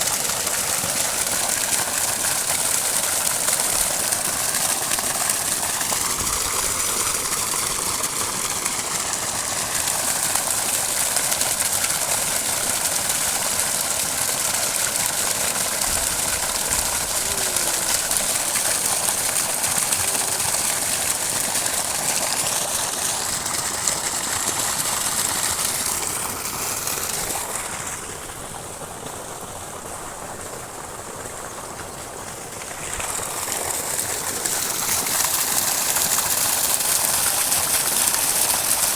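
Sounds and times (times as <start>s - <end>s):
water rushing from pump outlet: 0.0s - 38.9s.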